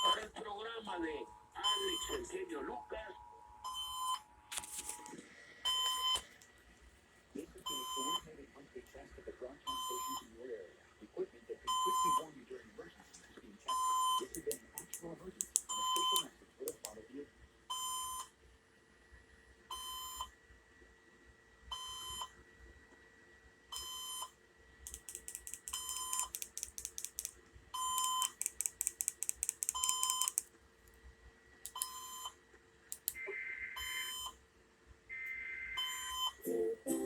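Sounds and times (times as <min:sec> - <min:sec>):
rapid clicking: 0:24.9 - 0:27.3, 0:28.0 - 0:30.5
short electronic beeps: 0:29.7 - 0:30.4.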